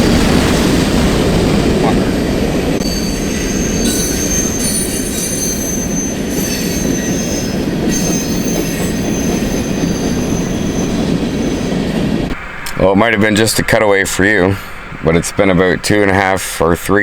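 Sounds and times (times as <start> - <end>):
train wheels rumbling on rails: 0.0 - 16.8
wheel squeal: 2.8 - 12.1.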